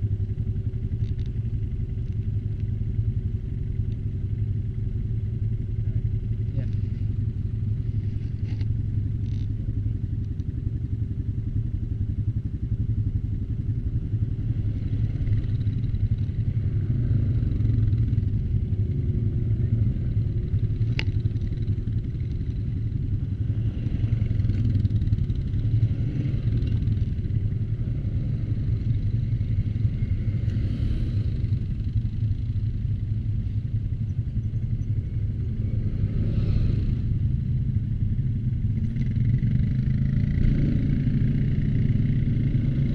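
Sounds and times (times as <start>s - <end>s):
atv engine running: 0.0s - 42.9s.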